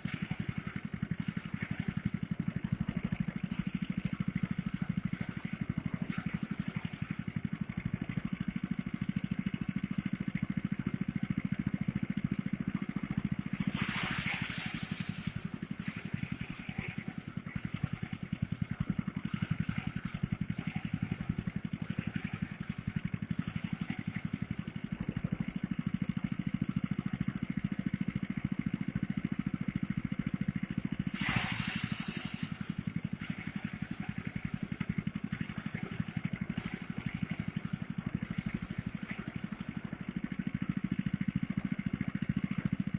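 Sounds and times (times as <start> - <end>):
thresher engine running: 0.0 - 42.9
hissing noise bursts: 13.6 - 15.4, 31.1 - 32.6.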